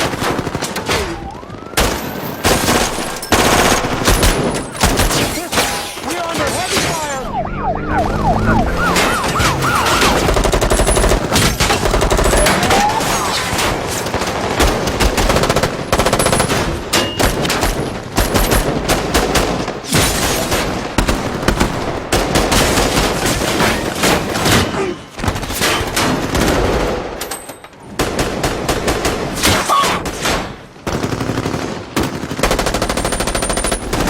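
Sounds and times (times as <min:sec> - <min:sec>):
police siren yelping: 0:00.6 - 0:03.7, 0:06.2 - 0:11.3, 0:12.2 - 0:13.4
automatic gunfire: 0:09.2 - 0:24.6.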